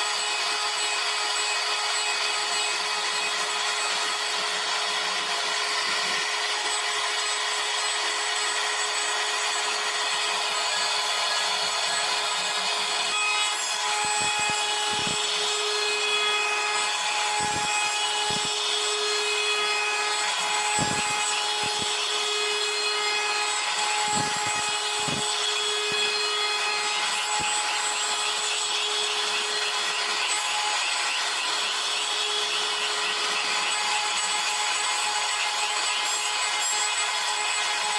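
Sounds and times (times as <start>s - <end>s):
cnc router spindle whine: 0.0s - 37.9s
wood cutting hiss: 10.2s - 36.8s.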